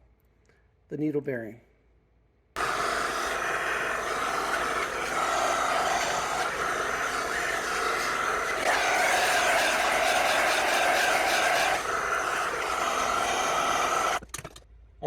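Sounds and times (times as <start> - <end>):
mechanical whirring: 2.6 - 14.3.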